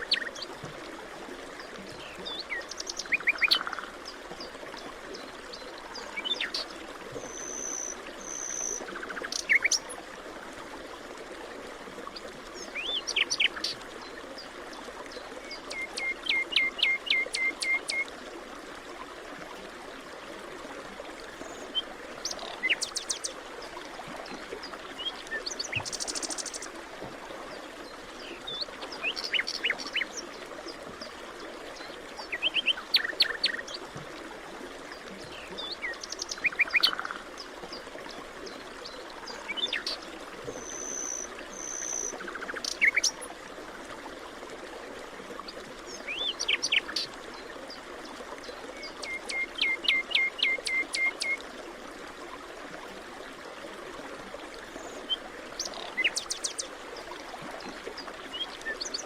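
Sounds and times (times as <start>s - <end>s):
running water: 0.0s - 59.0s.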